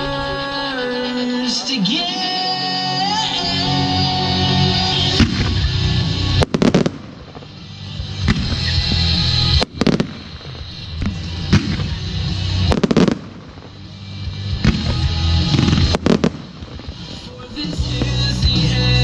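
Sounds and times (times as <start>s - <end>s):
music playing: 0.0s - 19.0s
fireworks bursting with bangs: 4.7s - 19.0s.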